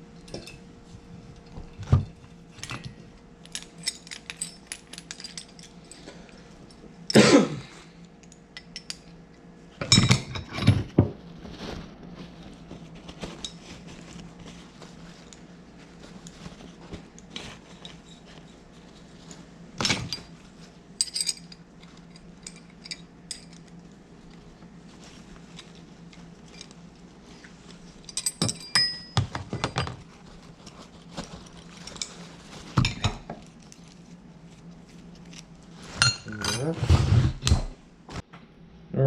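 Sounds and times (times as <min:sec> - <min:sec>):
metal tools clinking on workbench: 0:02.6 - 0:06.1, 0:21.0 - 0:23.8, 0:28.0 - 0:30.0.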